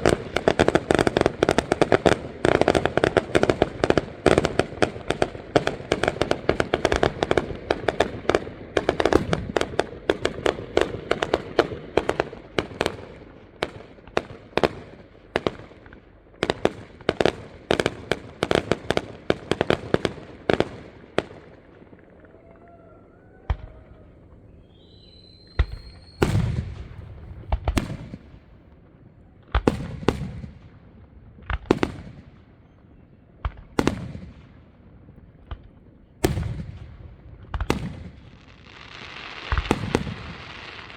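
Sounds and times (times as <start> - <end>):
fireworks bangs and crackle: 0.0 - 40.9
firework whistle: 22.2 - 28.1.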